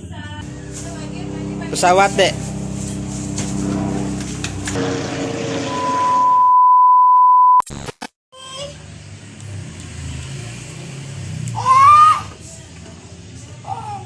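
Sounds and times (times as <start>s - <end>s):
high electronic beep tone: 5.7s - 8.0s.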